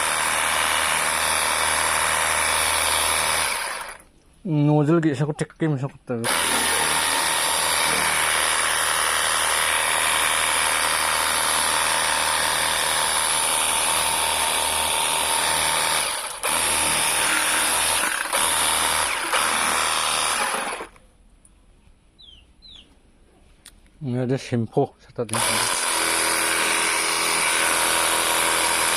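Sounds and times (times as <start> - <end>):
pressure washer motor whining: 6.2 - 21.0, 25.3 - 28.9.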